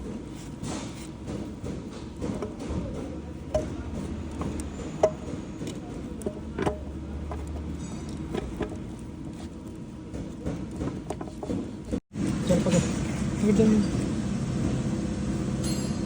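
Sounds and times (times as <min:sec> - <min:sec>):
tools and metal parts clinking: 0:03.5 - 0:11.8, 0:15.6 - 0:16.0.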